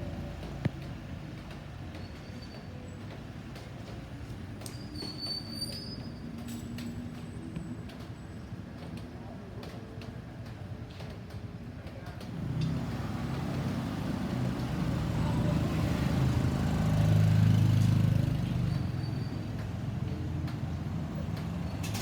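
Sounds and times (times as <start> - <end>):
vehicle passing by: 12.4 - 18.8.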